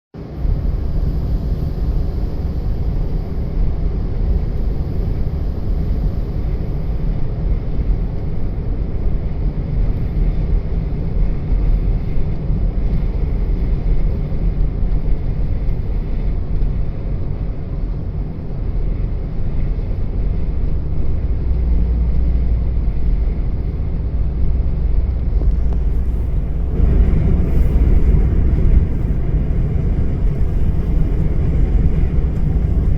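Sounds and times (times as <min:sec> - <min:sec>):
wind buffeting microphone: 0:22.6 - 0:32.9.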